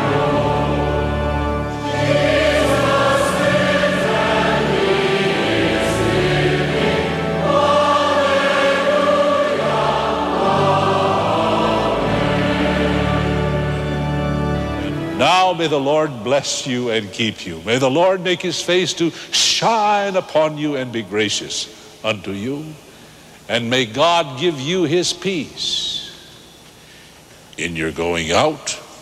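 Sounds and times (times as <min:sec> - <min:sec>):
choir singing a hymn: 0:00.0 - 0:17.3.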